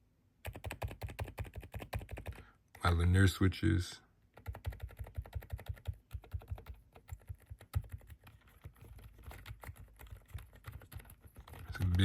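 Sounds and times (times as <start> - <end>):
fast typing on mechanical keyboard: 0.4 - 2.5, 4.3 - 12.0.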